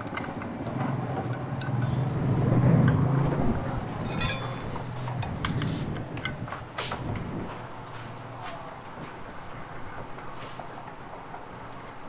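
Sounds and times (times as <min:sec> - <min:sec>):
metallic clinks of tools: 0:00.0 - 0:02.0, 0:04.0 - 0:07.2.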